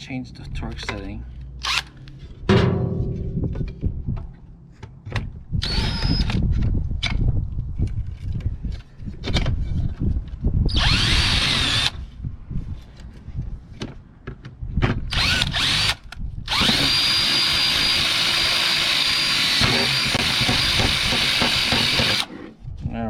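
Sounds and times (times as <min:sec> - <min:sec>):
cordless drill motor whine: 0:05.6 - 0:06.4, 0:10.7 - 0:12.0, 0:15.1 - 0:22.3.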